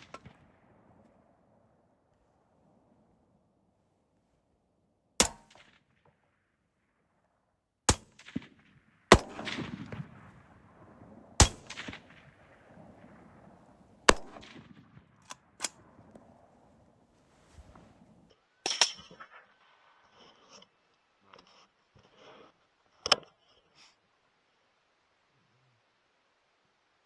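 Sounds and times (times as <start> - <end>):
rifle shots with rolling echo: 0.0 - 2.9, 5.2 - 7.2, 7.9 - 17.0.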